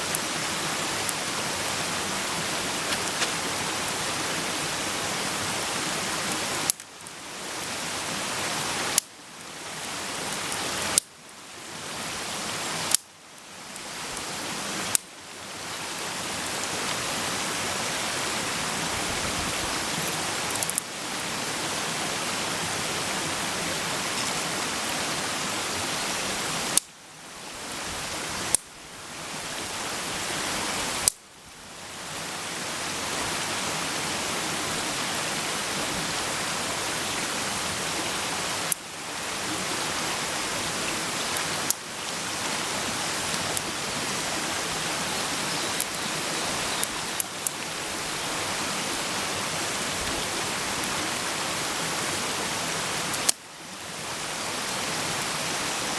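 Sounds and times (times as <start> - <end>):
sharp pops: 2.8 - 3.5.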